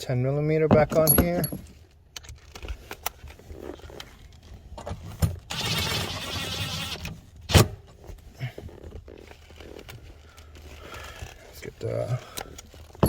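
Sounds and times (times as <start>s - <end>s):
small metal clinks: 0.9s - 1.8s.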